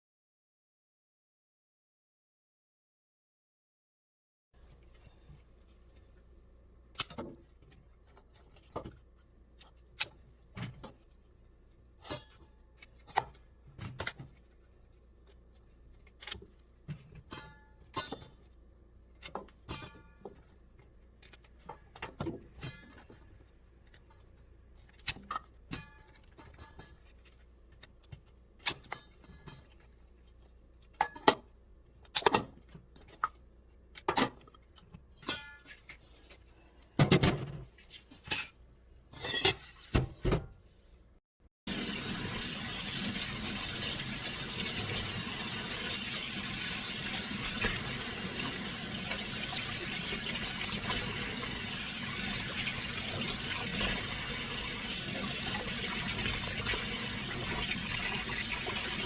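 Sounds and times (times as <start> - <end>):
tap water running into sink: 41.7 - 59.0.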